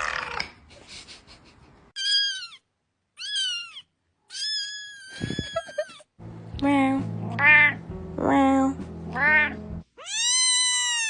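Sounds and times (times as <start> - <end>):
cat meowing: 3.2 - 6.0, 7.3 - 7.8, 9.1 - 11.0.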